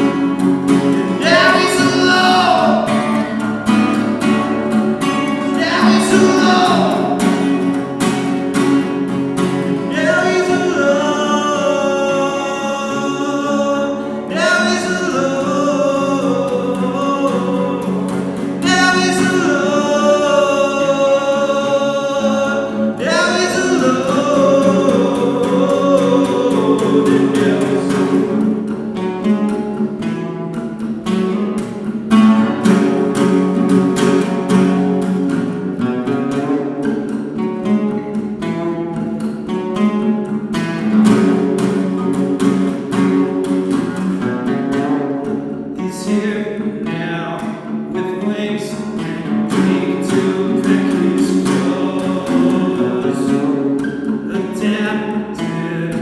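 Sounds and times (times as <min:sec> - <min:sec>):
person singing: 0:00.0 - 0:04.4, 0:05.0 - 0:07.6, 0:09.6 - 0:28.6, 0:45.8 - 0:56.0
acoustic guitar strumming: 0:00.0 - 0:56.0.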